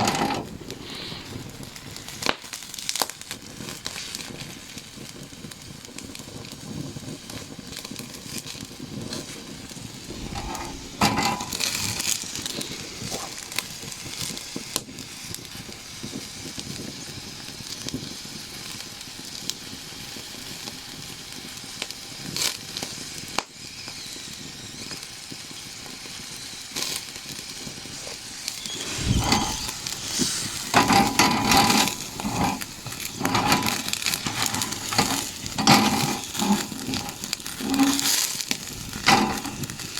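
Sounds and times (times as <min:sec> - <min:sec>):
campfire crackling and popping: 0:00.0 - 0:39.9
food sizzling: 0:00.0 - 0:39.9
crunching handling noises: 0:28.0 - 0:39.9.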